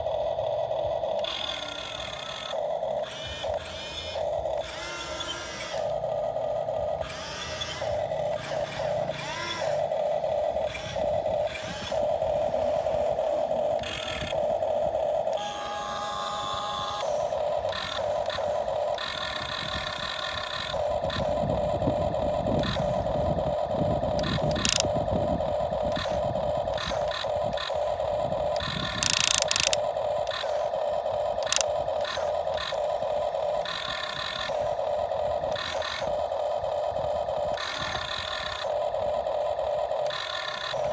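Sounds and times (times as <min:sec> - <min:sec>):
hydraulic pump motor whining: 0:00.0 - 0:40.9.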